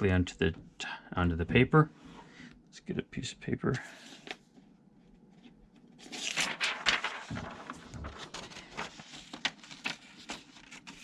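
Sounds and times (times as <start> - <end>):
paper rustling: 3.8 - 4.6, 5.4 - 11.0.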